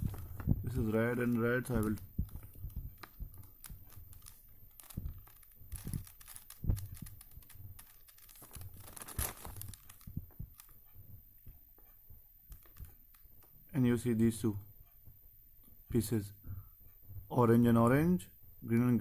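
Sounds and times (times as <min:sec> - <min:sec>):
puzzle cube clicking as turned: 0:03.6 - 0:10.0.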